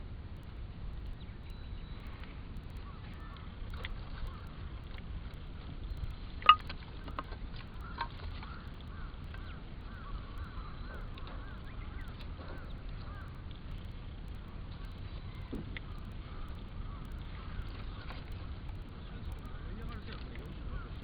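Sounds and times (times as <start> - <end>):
campfire crackling and popping: 0.0 - 21.0
low steady rumble: 0.0 - 21.0
bird chirping: 7.8 - 13.9.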